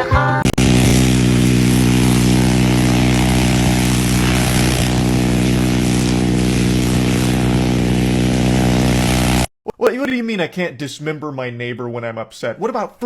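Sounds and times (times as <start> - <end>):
propeller aircraft engine running: 0.4 - 9.5.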